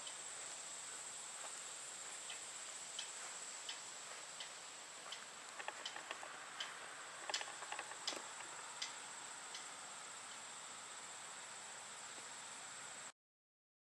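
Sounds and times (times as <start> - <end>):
faint high-pitched hiss: 0.0 - 13.2
ticks and clicks: 4.4 - 9.7.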